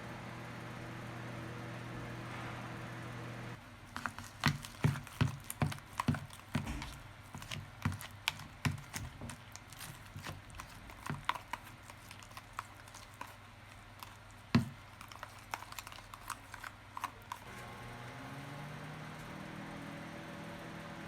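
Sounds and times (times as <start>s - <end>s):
steady mechanical hum: 0.0s - 21.0s
handling clicks and knocks: 4.0s - 17.5s.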